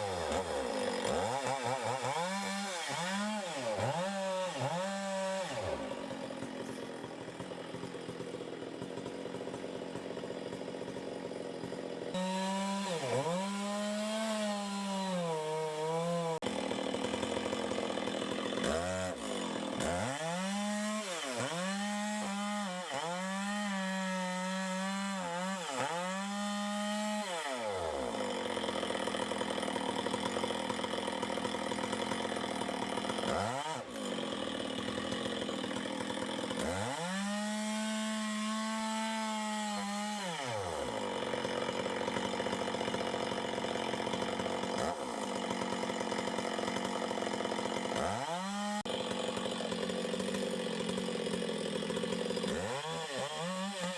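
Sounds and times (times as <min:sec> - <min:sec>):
chainsaw cutting wood: 0:00.0 - 0:53.9.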